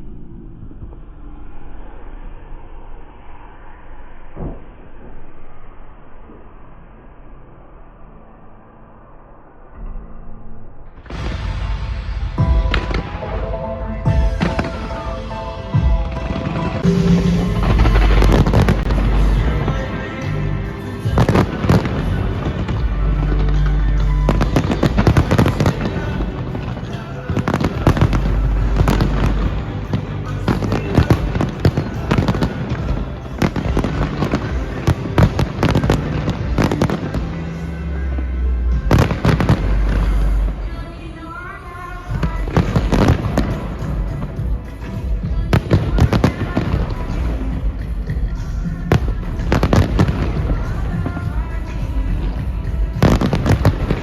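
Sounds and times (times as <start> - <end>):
deep rumble: 0.0 - 54.0
fireworks booming and cracking: 11.1 - 40.7, 42.1 - 54.0
music with held notes: 12.4 - 40.6.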